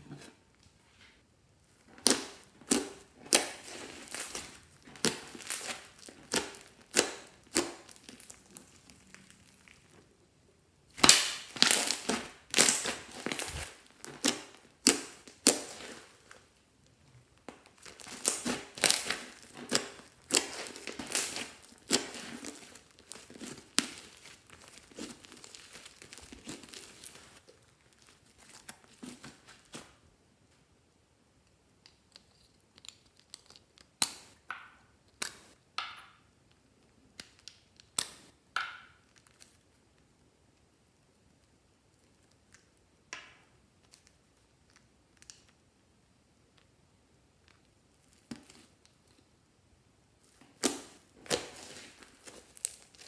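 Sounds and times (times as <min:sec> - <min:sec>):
slime crinkling and popping: 0:01.7 - 0:10.2, 0:10.9 - 0:30.0, 0:47.3 - 0:49.3, 0:50.2 - 0:53.0.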